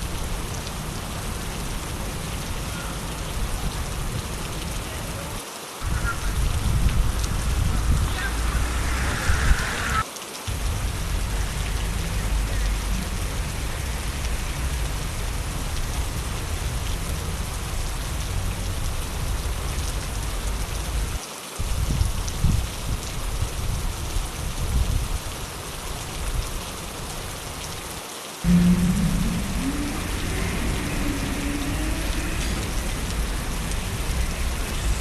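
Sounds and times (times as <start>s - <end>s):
rain on a wet street: 0.0s - 35.0s
low rumble: 5.8s - 21.2s, 28.4s - 35.0s.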